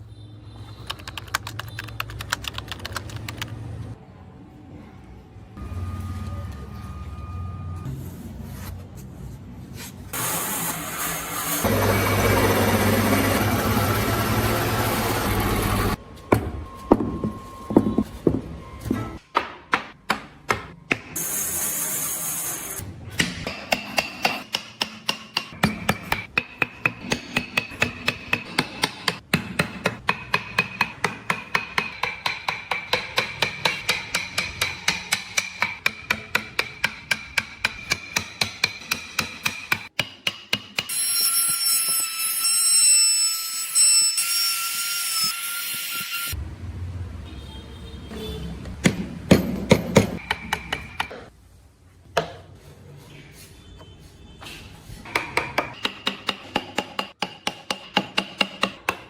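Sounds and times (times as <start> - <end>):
hammer tapping chisel into wood: 55.1 - 59.0.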